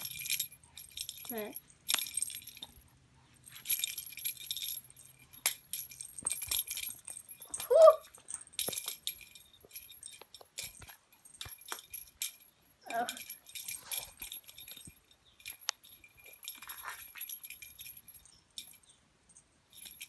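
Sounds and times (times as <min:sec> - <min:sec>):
cat toy bell jingling: 0:00.0 - 0:20.0
brief voiced cry: 0:07.6 - 0:08.1.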